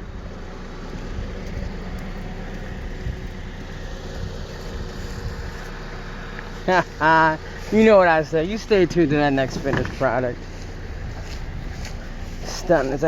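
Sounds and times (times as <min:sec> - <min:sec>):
car engine running: 0:00.0 - 0:13.0
road noise: 0:00.0 - 0:13.0.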